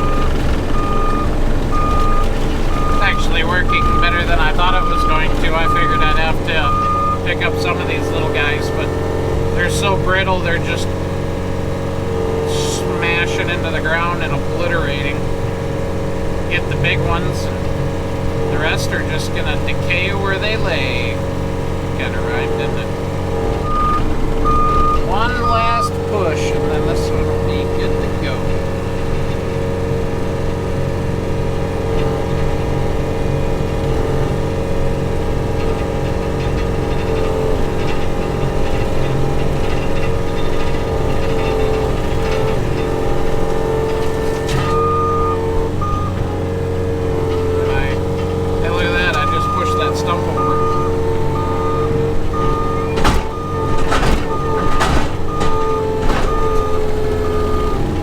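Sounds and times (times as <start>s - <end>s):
backup alarm beeping: 0.0s - 28.9s, 40.4s - 58.0s
loader engine whining at high revs: 0.0s - 58.0s
sharp cracks or clunks: 31.6s - 49.4s, 50.6s - 58.0s.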